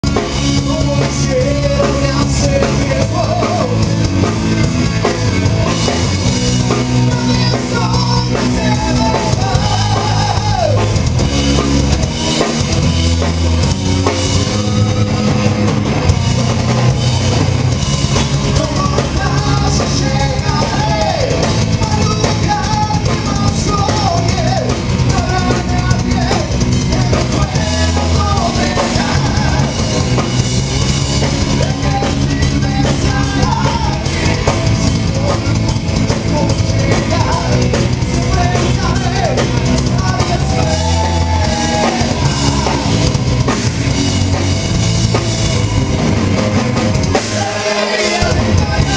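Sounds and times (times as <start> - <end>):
rock band playing: 0.0 - 48.9
person singing: 0.2 - 3.9, 6.7 - 11.0, 18.4 - 30.2, 31.5 - 43.5, 47.1 - 48.9.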